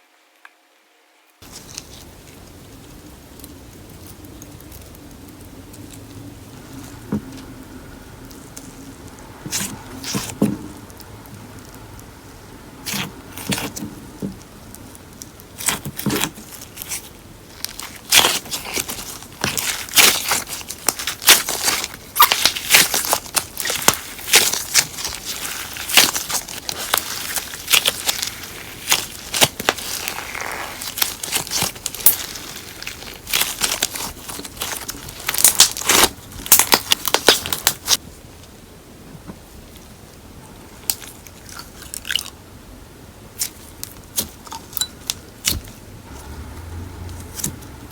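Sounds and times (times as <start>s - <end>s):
slime sticky crackles and pops: 14.4s - 38.0s.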